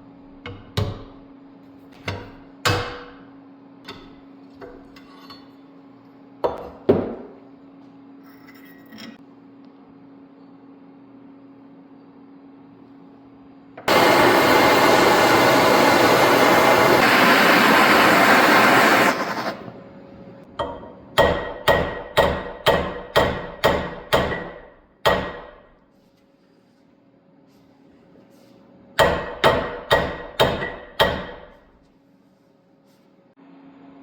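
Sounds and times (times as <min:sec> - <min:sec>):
torch hissing: 0:13.9 - 0:19.7.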